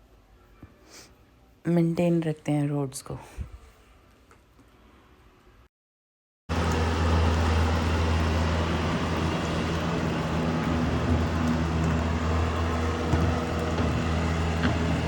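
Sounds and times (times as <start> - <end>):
large vehicle engine humming: 6.5 - 15.0.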